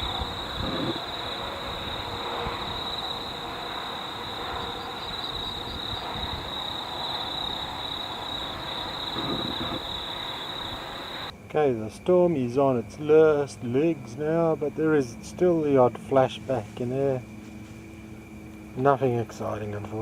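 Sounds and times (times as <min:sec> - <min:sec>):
high-pitched insect chorus trilling: 0:00.0 - 0:20.0
low grainy rumble: 0:00.0 - 0:20.0.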